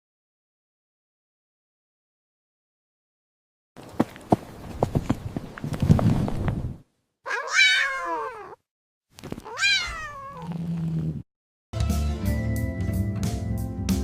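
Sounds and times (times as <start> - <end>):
cat meowing: 7.3 - 8.6, 9.4 - 10.6
music: 11.8 - 14.0.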